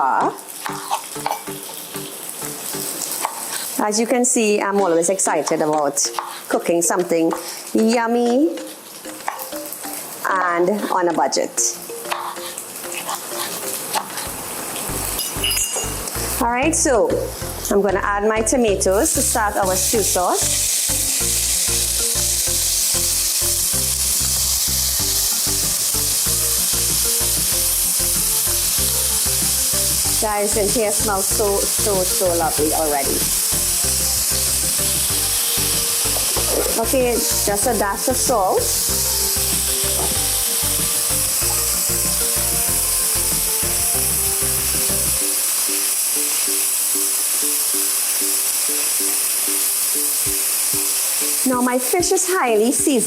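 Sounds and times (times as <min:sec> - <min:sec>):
tomatoes sizzling in hot oil: 0:00.0 - 0:53.0
background music with bass line: 0:32.1 - 0:45.2.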